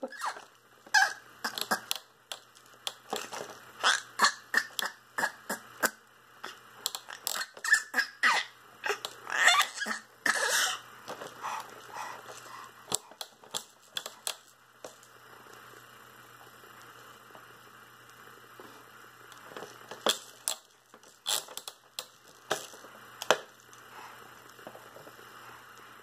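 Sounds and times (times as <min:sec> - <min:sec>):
mouth squeaks: 0:00.0 - 0:02.0, 0:03.8 - 0:05.4, 0:07.1 - 0:10.8.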